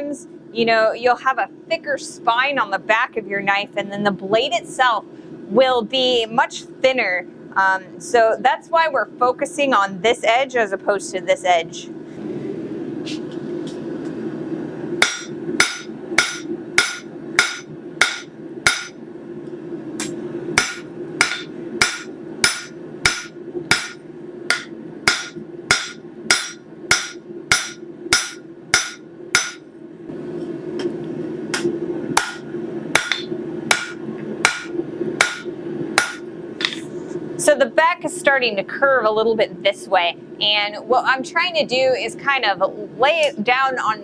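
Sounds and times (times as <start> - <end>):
steady low hum: 0.0 - 44.0
hammer ringing on metal: 15.0 - 19.0, 20.6 - 29.6, 32.2 - 32.4, 33.0 - 36.2.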